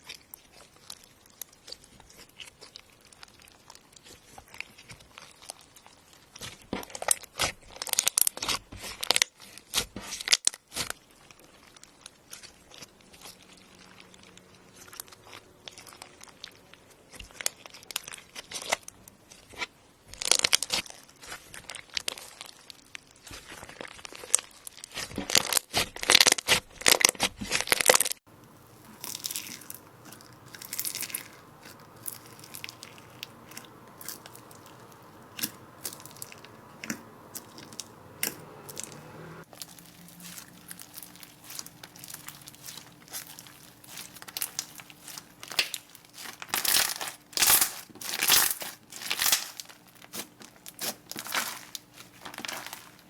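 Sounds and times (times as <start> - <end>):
slime crackling when squeezed: 28.3 - 53.0.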